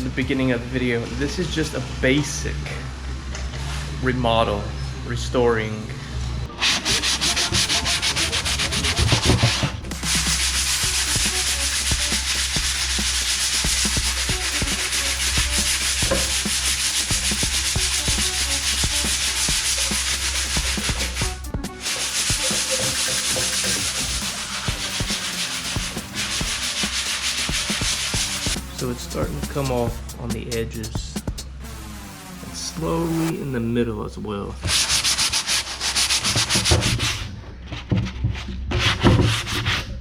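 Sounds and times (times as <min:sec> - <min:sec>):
sandpaper scrubbing wood: 0:06.6 - 0:31.4, 0:34.6 - 0:37.3, 0:38.7 - 0:39.9.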